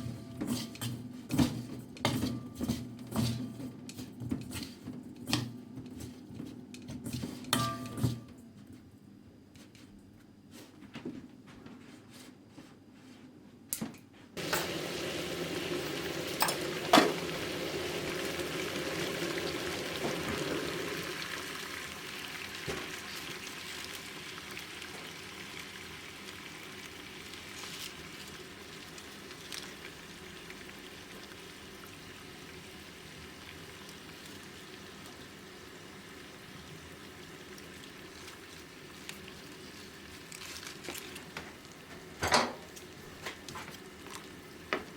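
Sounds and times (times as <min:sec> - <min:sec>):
sizzling in a hot pan: 0:14.4 - 0:44.9.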